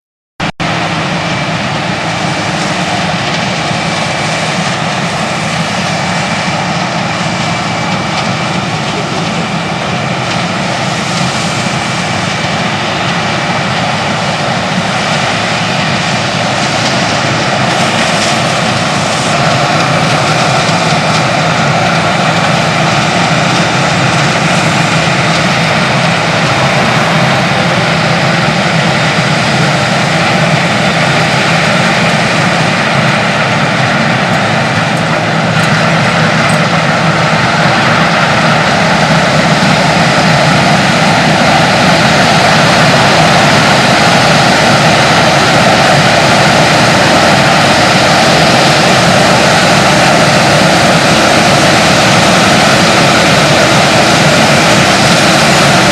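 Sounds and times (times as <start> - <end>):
combine harvester droning: 0.4 - 55.9.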